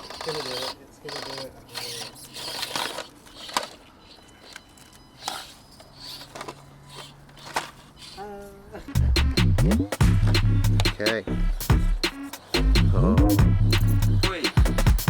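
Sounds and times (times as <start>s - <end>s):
toy truck clicking and scraping: 0.0s - 8.8s
small electric motor whirring: 0.0s - 9.0s.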